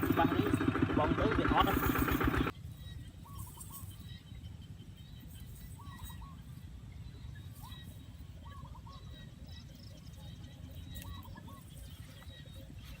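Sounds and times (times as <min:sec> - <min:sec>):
steady low rumble: 0:00.0 - 0:02.6.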